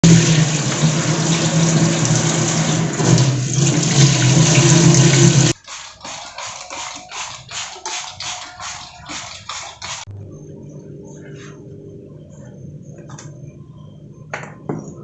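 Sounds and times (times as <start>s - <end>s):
tap water running into sink: 0.0s - 10.1s.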